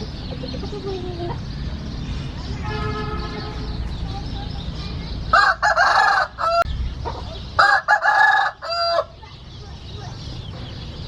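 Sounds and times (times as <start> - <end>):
rooster crowing: 5.4 - 6.7, 7.6 - 9.1.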